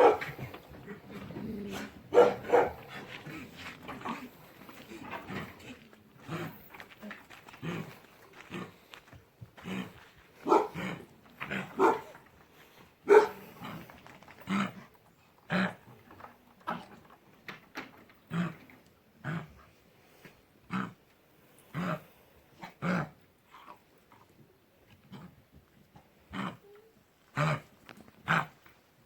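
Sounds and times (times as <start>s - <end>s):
dogs coughing harshly: 0.0s - 0.8s, 1.7s - 3.6s, 13.1s - 13.4s.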